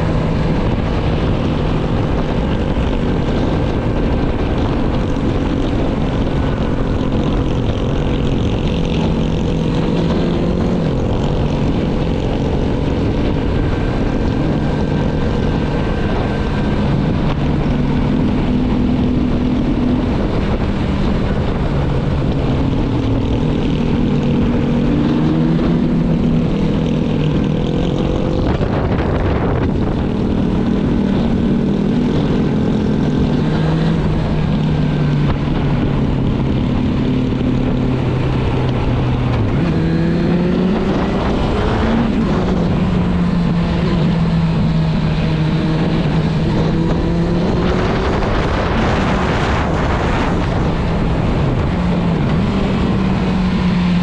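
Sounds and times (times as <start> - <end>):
motorcycle engine while riding: 0.0 - 54.0.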